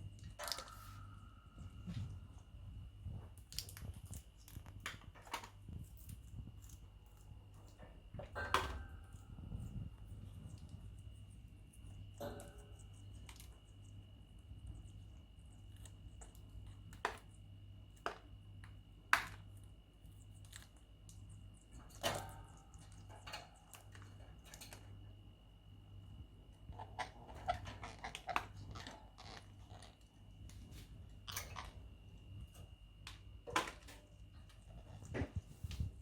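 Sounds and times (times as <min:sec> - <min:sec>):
small nibbles: 0:00.0 - 0:08.4, 0:09.0 - 0:25.2, 0:26.5 - 0:36.0
parrot crunching food: 0:00.1 - 0:02.4, 0:03.1 - 0:25.1, 0:26.6 - 0:36.0.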